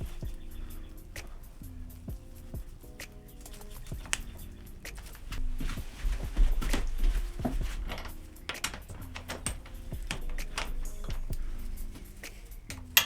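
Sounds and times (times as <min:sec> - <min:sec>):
background music with sustained notes: 0:00.0 - 0:13.0
metal clinks of bicycle parts: 0:06.7 - 0:13.0.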